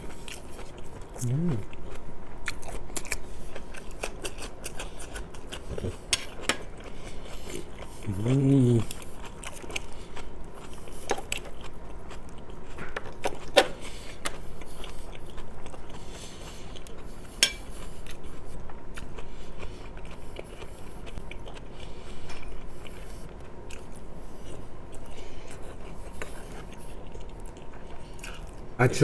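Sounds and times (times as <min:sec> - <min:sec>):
close chewing and biting: 0:00.0 - 0:28.8
cutlery clicking on plate: 0:17.4 - 0:17.6.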